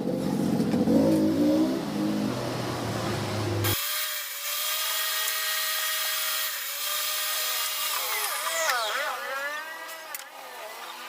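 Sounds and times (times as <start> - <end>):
miter saw cutting wood: 3.6 - 11.0.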